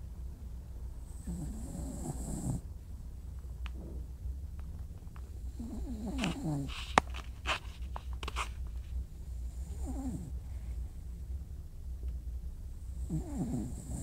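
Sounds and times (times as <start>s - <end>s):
dog snoring: 1.0s - 2.7s, 5.4s - 6.8s, 9.4s - 10.4s, 12.8s - 14.0s.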